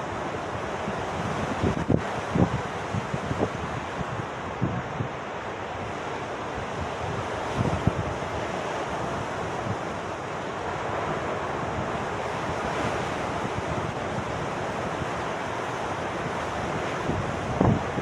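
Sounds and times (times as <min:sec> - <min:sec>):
wind buffeting microphone: 0:00.0 - 0:05.2, 0:06.5 - 0:10.1, 0:16.2 - 0:18.0
sea surf washing onto shore: 0:00.0 - 0:18.0.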